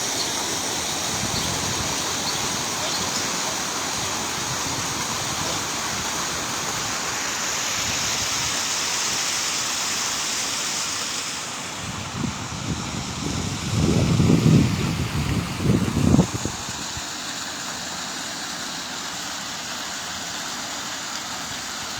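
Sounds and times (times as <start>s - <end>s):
heavy rain hissing: 0.0s - 21.9s
wind buffeting microphone: 0.9s - 6.5s, 11.9s - 17.0s.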